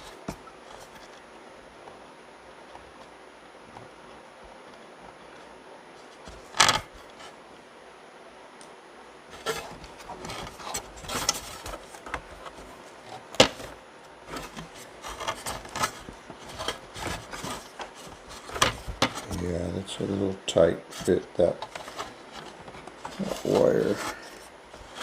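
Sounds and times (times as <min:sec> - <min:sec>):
hands rubbing and rustling wires: 0:09.3 - 0:25.0.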